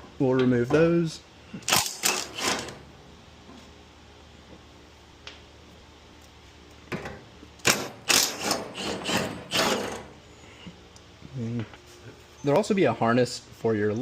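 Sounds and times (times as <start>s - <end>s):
cordless power tool bursts: 1.6s - 2.8s, 7.6s - 10.2s.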